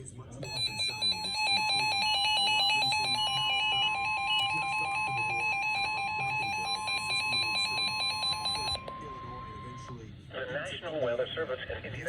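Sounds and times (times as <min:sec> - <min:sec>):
steady high tone: 0:00.4 - 0:10.0.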